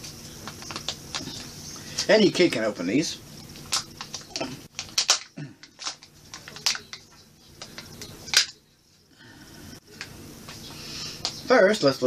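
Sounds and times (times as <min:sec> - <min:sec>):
wrapper rustling: 0:00.2 - 0:02.5, 0:03.4 - 0:08.6.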